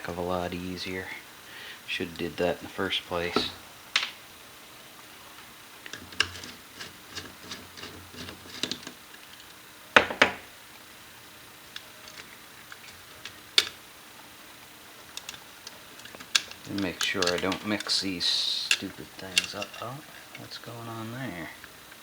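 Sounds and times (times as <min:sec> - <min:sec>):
small metal hardware clinking: 0:16.0 - 0:18.0, 0:18.6 - 0:20.4.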